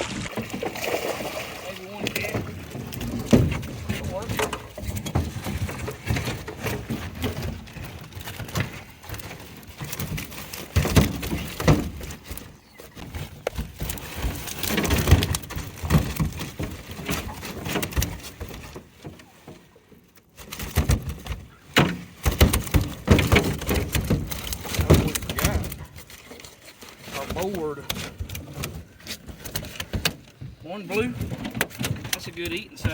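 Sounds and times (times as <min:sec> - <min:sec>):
fish flopping against hull: 0:00.0 - 0:32.9
net hauled into boat thumping: 0:00.0 - 0:32.9.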